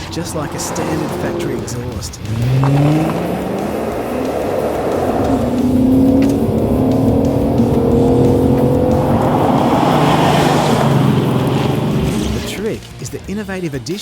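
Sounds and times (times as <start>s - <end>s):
car engine accelerating: 0.0s - 13.2s.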